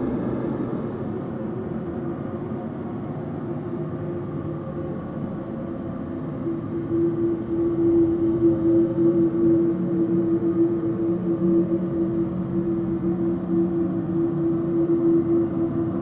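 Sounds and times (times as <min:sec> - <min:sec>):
low rumbling drone with hum: 0:00.0 - 0:16.0.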